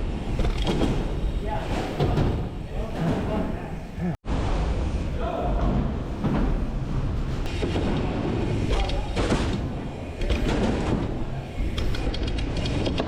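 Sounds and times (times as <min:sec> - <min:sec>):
bike clicks and rattles: 0:07.5 - 0:13.0.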